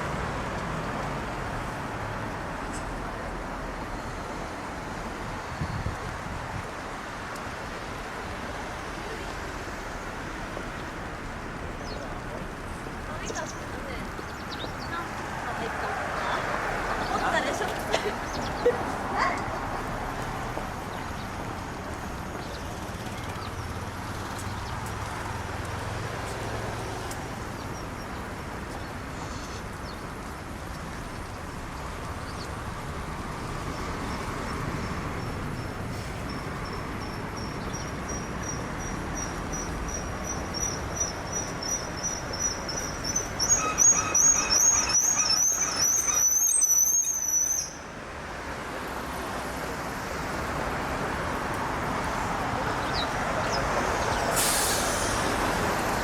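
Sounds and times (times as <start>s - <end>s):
urban traffic noise: 0.0s - 56.0s
high wavering squeal: 41.8s - 47.9s.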